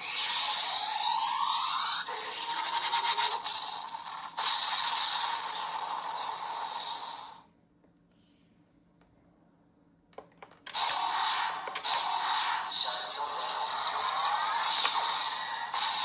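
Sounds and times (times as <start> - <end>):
plastic clicks: 10.1 - 12.1, 14.4 - 15.2.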